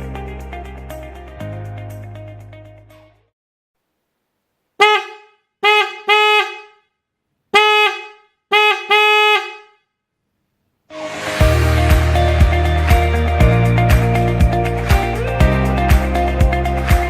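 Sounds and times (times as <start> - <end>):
background music: 0.0 - 3.2, 10.9 - 17.0
car horn honks: 4.8 - 9.9.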